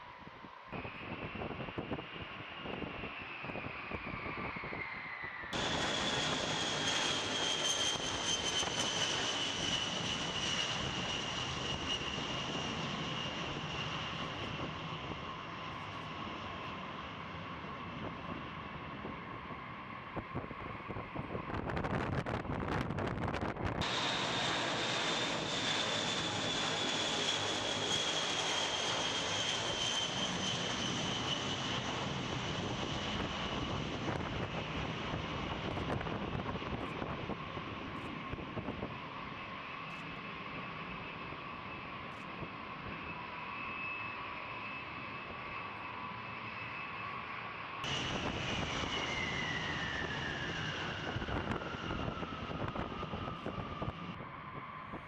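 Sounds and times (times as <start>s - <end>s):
jet engines roaring and whining: 0.0s - 55.0s.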